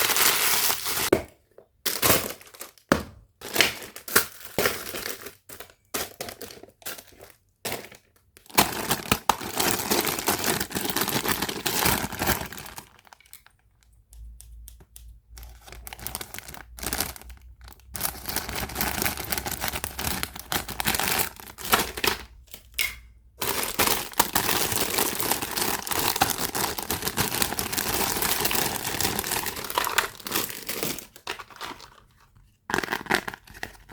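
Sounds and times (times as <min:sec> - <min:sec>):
plastic packaging crinkling and tearing: 0:00.0 - 0:01.1, 0:08.4 - 0:13.8, 0:15.3 - 0:22.5, 0:23.4 - 0:33.9.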